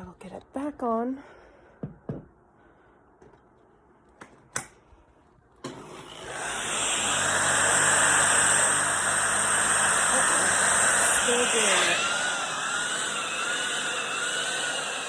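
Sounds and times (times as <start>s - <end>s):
vacuum cleaner motor whining: 5.6s - 15.0s.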